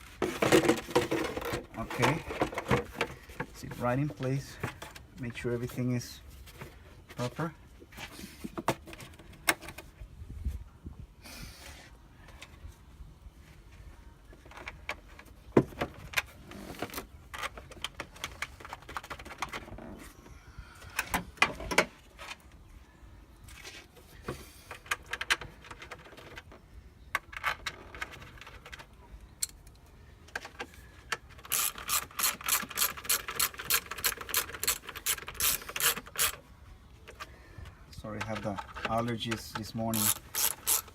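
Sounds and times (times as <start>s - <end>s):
tools clicking and knocking: 29.4s - 36.4s, 38.2s - 40.9s
ratchet wrench clicking rapidly: 31.5s - 36.4s, 39.9s - 40.9s.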